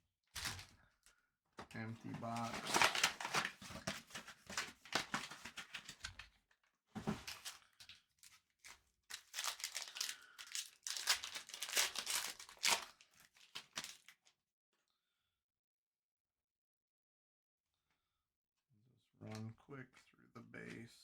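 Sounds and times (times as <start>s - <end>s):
foil wrappers crinkling and tearing: 2.0s - 6.1s, 7.1s - 14.2s.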